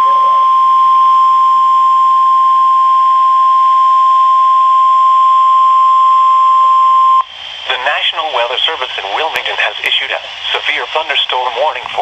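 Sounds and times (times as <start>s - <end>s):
steady alarm tone: 0.0s - 7.6s.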